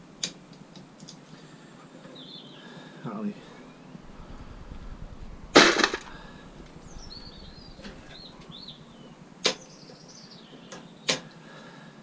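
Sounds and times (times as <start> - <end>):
small bird chirping: 2.1 - 2.7, 6.8 - 11.1.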